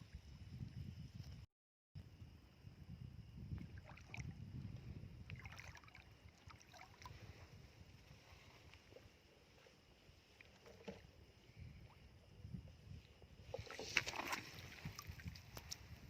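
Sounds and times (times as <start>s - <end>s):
shallow water sloshing: 3.6s - 12.1s, 13.4s - 15.8s.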